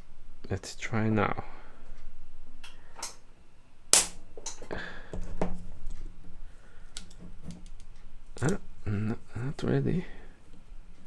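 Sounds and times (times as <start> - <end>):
spot welder crack: 2.6 - 3.3, 3.9 - 5.0.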